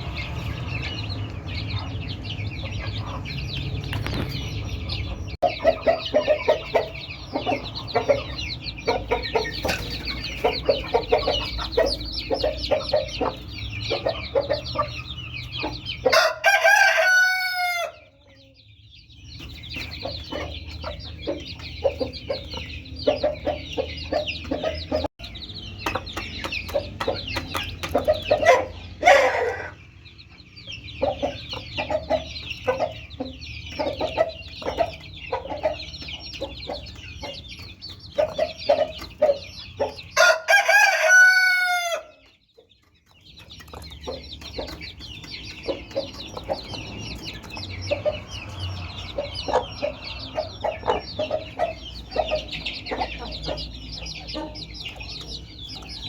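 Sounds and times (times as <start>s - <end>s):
chicks peeping: 0.0s - 56.0s
hen clucking: 0.0s - 56.0s
rooster crowing: 16.1s - 18.0s, 40.2s - 42.2s.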